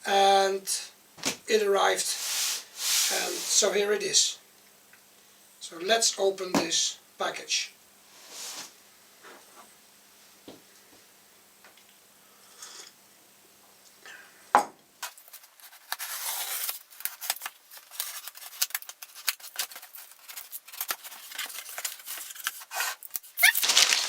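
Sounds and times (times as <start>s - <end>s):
cardboard scraping and rustling: 15.0s - 24.0s.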